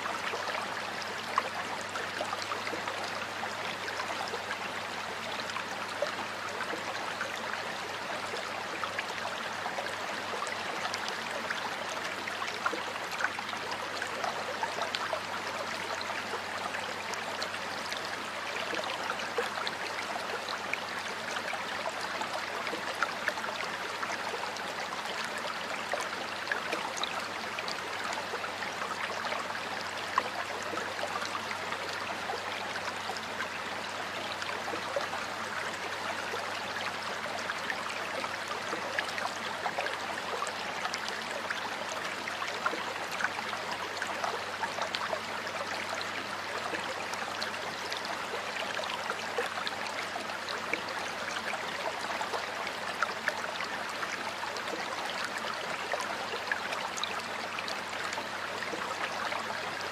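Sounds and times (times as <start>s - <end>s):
stream flowing over stones: 0.0s - 59.9s.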